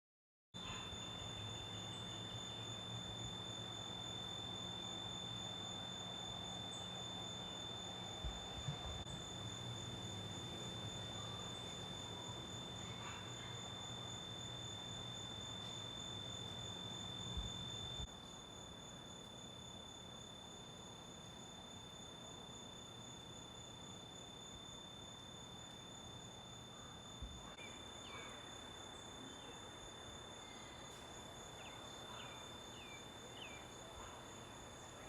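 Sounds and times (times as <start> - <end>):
low steady hum: 0.6 - 20.3
insect chirring: 0.6 - 34.6.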